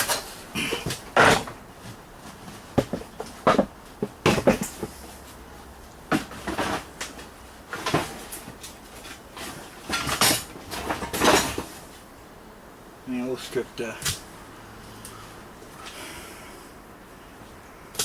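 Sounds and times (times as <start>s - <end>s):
heavy metal parts clunking: 2.8s - 5.0s, 6.1s - 11.8s.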